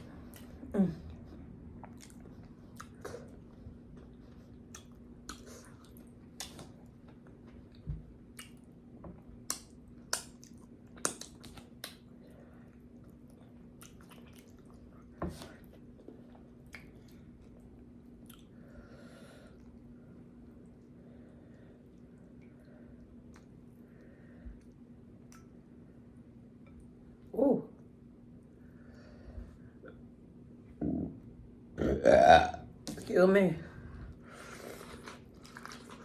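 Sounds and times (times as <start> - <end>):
faint steady hum: 0.0 - 36.0
chewing and mouth smacking: 1.8 - 18.5, 21.8 - 23.6, 34.4 - 36.0.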